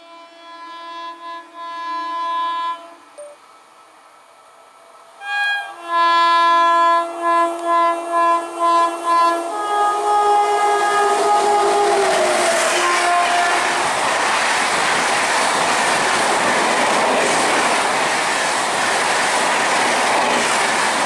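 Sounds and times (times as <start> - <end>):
locomotive air horn blasts: 0.0 - 3.4, 5.2 - 14.1
train rumble: 0.0 - 21.0.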